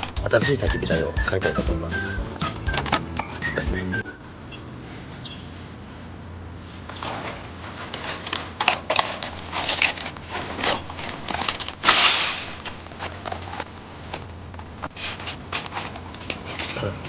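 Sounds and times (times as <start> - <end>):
packaging rustling: 7.0 - 17.0.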